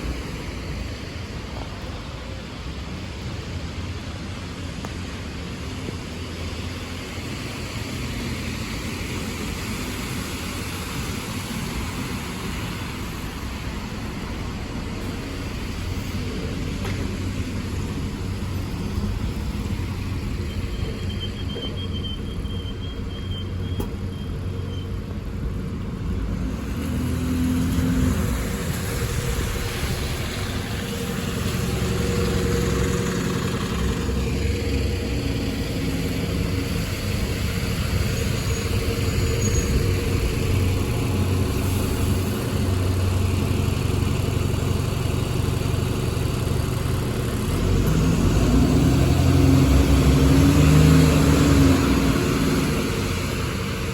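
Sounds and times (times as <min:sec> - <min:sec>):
buses and traffic passing: 0:00.0 - 0:53.9
tyres hissing on wet road: 0:00.0 - 0:53.9.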